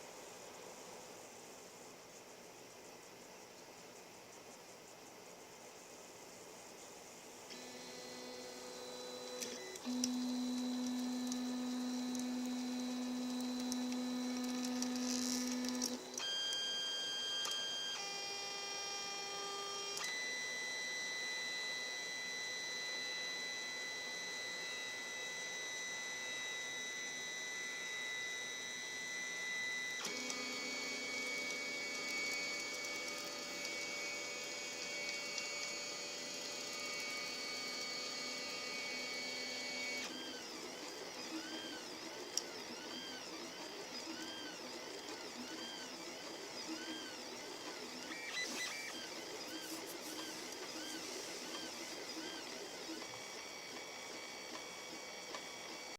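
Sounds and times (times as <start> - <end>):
stepper motors whining: 7.5 - 55.9.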